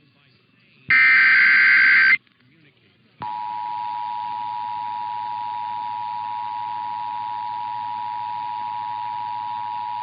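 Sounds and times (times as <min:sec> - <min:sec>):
two-tone alarm signal: 0:00.9 - 0:02.2.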